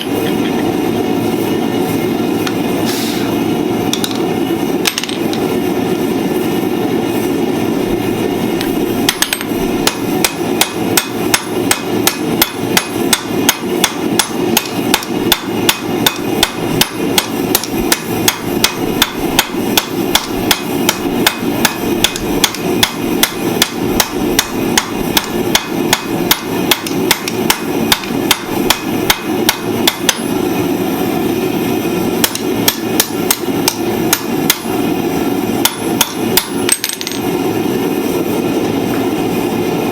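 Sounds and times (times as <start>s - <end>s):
steady low hum: 0.0s - 39.9s
hammer striking steel on anvil: 8.6s - 30.4s, 32.2s - 34.9s, 35.6s - 37.3s.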